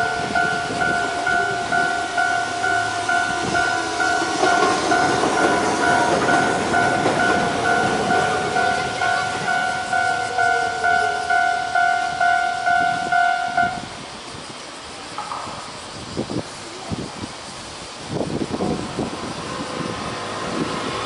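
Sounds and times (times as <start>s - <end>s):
level-crossing bell dinging: 0.0s - 13.9s
train rumble passing: 0.0s - 21.0s.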